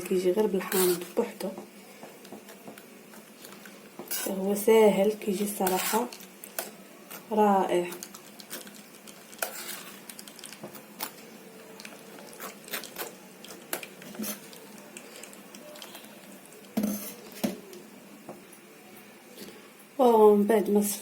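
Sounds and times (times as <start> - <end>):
spoon scraping a sieve: 0.6 - 1.2, 2.4 - 4.7, 5.4 - 11.2, 11.8 - 17.6.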